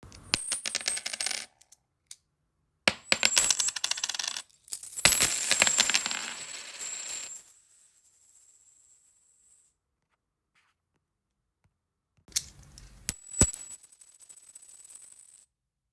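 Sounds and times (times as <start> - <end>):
coins clinking: 0.2 - 1.5, 2.9 - 7.6, 12.4 - 15.3.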